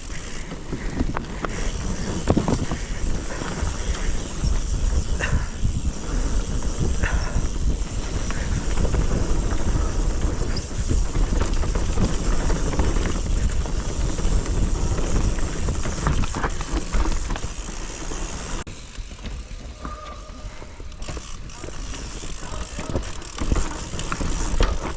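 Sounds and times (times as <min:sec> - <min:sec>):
bike frame and chain rattling: 0:00.0 - 0:24.9
bike tyres on dirt and rock: 0:00.0 - 0:24.9
wind on microphone: 0:00.8 - 0:17.4.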